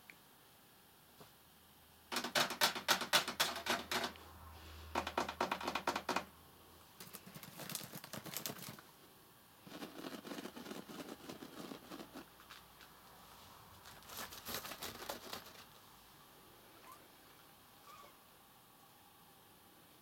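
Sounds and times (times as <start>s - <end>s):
rapid clicking bursts: 2.1s - 4.2s, 5.0s - 6.3s, 7.0s - 8.8s.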